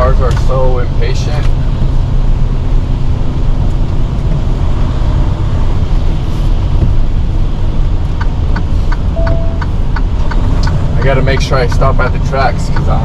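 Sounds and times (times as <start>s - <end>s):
road noise hiss: 0.0s - 13.0s
truck diesel engine rumble: 0.0s - 13.0s
regular clicks: 8.1s - 13.0s.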